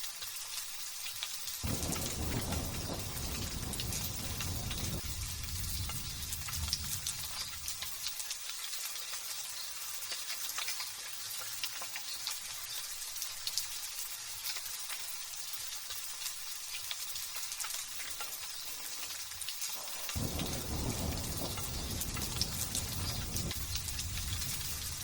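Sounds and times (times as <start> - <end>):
light drizzle pattering: 0.0 - 25.0
rolling rumble of thunder: 1.6 - 8.0, 20.1 - 25.0.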